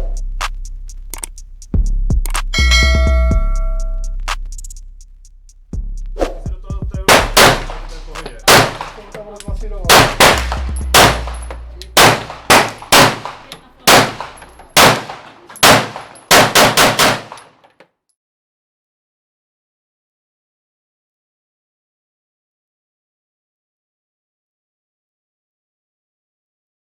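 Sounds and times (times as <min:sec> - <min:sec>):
pistol gunshots: 0:07.1 - 0:09.2, 0:09.9 - 0:17.6.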